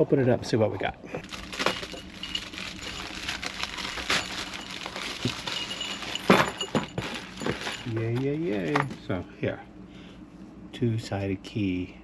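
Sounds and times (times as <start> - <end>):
package rustling: 1.2 - 9.0.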